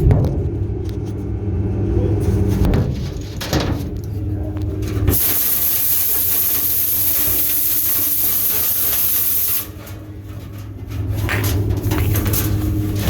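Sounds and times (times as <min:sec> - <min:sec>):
low machine hum: 0:00.0 - 0:13.0
rushing air hiss: 0:05.1 - 0:09.7.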